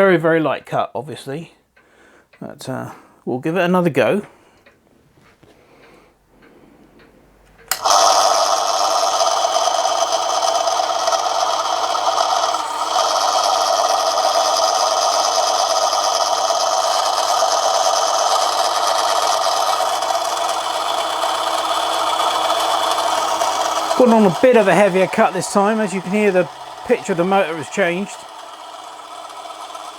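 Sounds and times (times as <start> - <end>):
lathe motor whining: 7.7 - 29.9.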